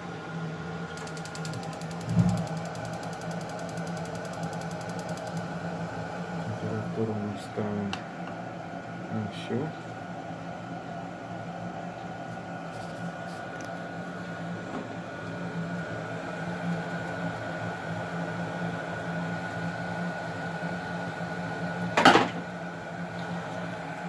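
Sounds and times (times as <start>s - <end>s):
gas boiler humming: 0.0s - 24.0s.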